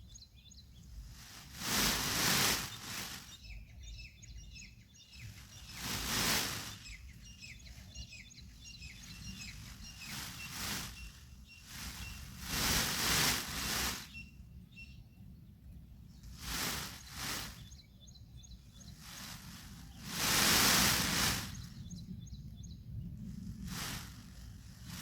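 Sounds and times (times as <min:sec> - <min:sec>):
faint high bird chirps: 0:00.0 - 0:25.0
surges of rushing noise: 0:01.2 - 0:03.4, 0:05.4 - 0:07.0, 0:09.0 - 0:14.1, 0:16.4 - 0:17.6, 0:19.0 - 0:21.7, 0:23.6 - 0:25.0.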